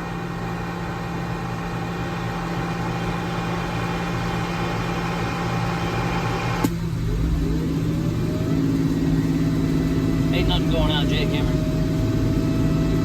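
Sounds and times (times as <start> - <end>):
radio hiss and hum: 10.3 - 11.6.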